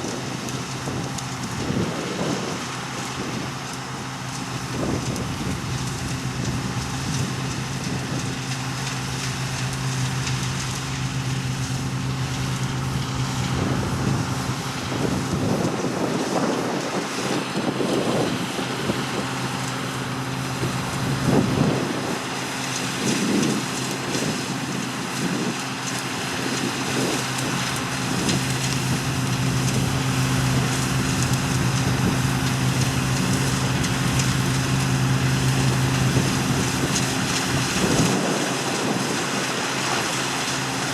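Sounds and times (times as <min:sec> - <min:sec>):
machinery engine humming: 0:00.0 - 0:40.9
wind on microphone: 0:04.7 - 0:08.3, 0:13.2 - 0:19.5, 0:20.5 - 0:25.6, 0:35.7 - 0:40.2.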